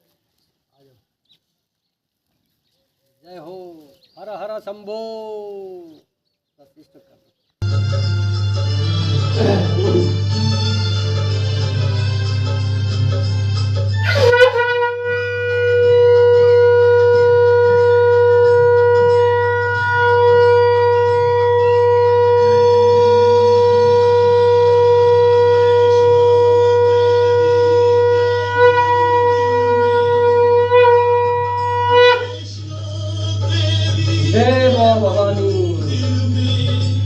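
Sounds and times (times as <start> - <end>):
conch shell blown: 7.6 - 32.6.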